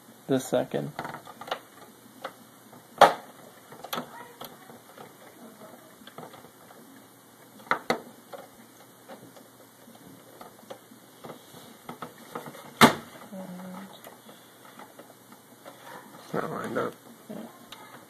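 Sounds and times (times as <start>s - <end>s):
sharp plastic clicks and knocks: 0.9s - 5.2s, 7.5s - 13.2s.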